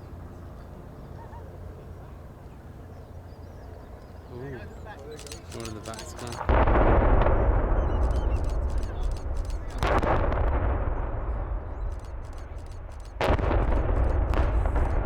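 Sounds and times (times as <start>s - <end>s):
sharp explosive blasts: 5.2s - 15.0s.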